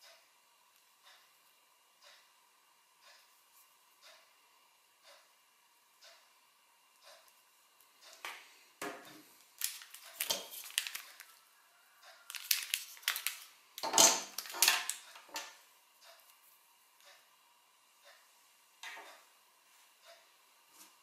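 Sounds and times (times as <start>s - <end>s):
packaging crinkling and rustling: 9.4s - 11.4s, 12.3s - 15.1s.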